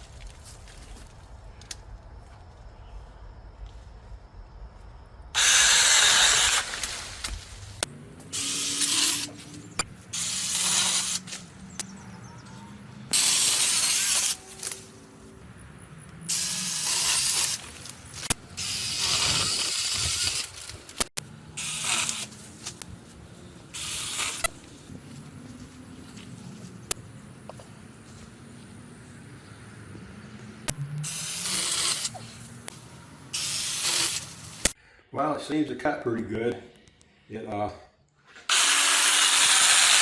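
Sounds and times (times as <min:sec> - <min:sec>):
mini chainsaw cutting branches: 0:05.4 - 0:11.6, 0:13.1 - 0:14.9, 0:16.3 - 0:22.8, 0:23.7 - 0:24.7, 0:31.0 - 0:34.8, 0:38.5 - 0:40.0.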